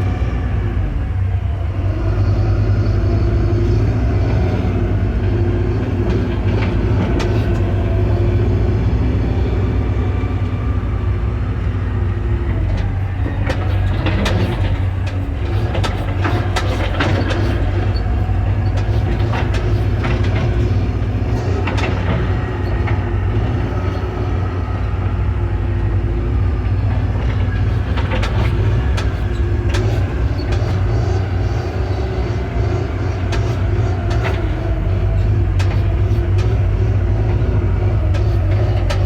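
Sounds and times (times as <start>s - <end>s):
diesel engine running: 0.0s - 39.0s
metal clanks and rattles: 12.4s - 24.2s, 26.7s - 39.0s.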